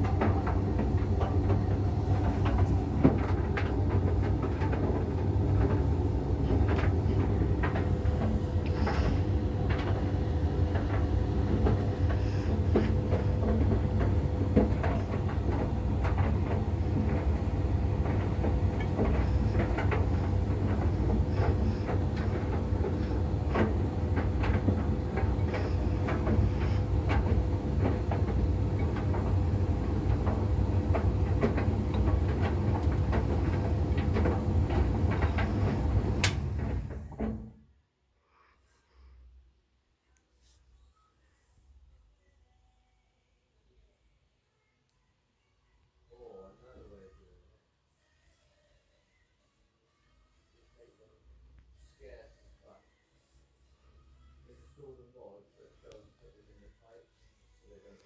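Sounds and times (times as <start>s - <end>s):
clicks and knocks of tumbling load: 0.0s - 37.6s
tumble dryer rumbling: 0.0s - 37.6s.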